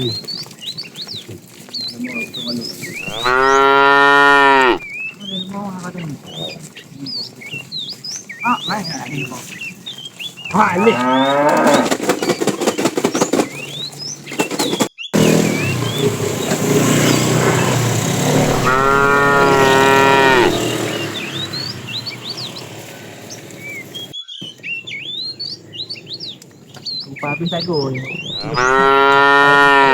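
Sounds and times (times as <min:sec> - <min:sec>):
cows mooing: 0:03.0 - 0:04.9, 0:10.5 - 0:12.0, 0:15.2 - 0:21.7, 0:28.1 - 0:29.9.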